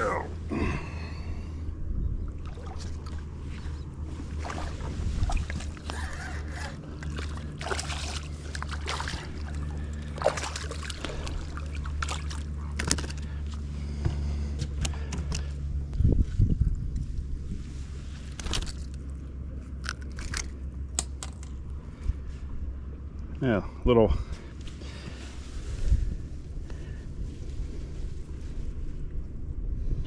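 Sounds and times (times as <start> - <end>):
boat motor humming: 0.0 - 23.4
water sloshing: 2.3 - 13.7.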